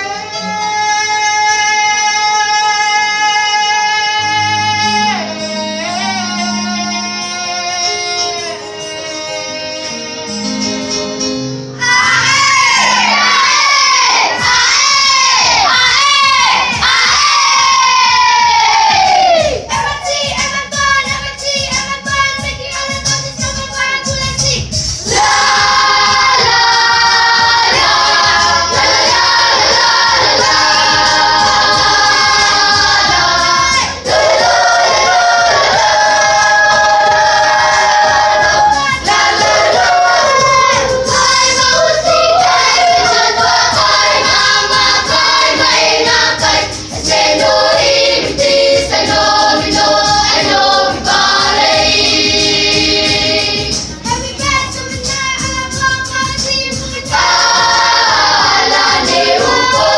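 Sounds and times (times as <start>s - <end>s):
youth choir singing: 11.8s - 23.1s, 25.0s - 59.9s.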